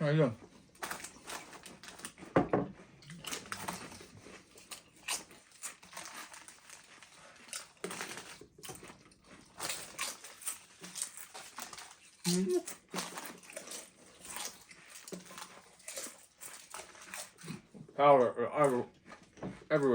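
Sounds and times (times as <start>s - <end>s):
chip bags crinkling: 0.7s - 2.2s, 3.0s - 17.6s
chips being crunched and chewed: 0.8s - 2.2s, 3.0s - 17.7s
short vocal sound: 12.3s - 12.7s.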